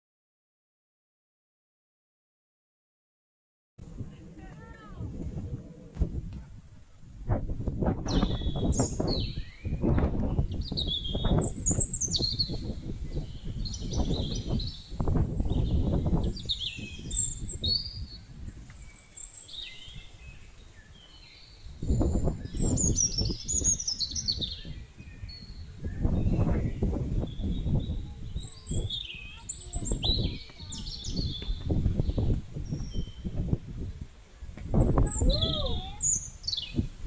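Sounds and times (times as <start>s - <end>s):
low rumbling noise: 3.8s - 10.6s
birds chirping and singing: 7.8s - 33.9s, 34.6s - 37.0s.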